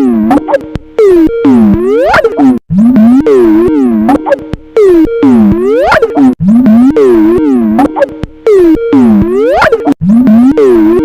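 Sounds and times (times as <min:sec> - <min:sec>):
pitch-warped synth ringtone: 0:00.0 - 0:11.0.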